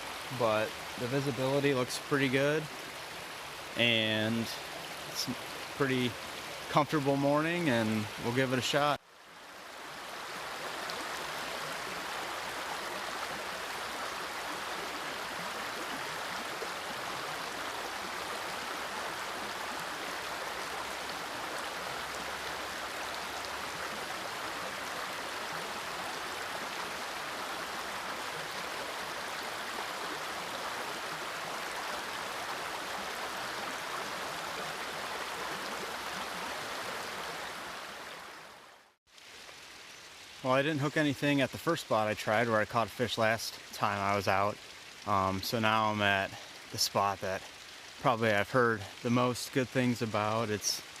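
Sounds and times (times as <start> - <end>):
river current rushing: 0.0 - 38.7.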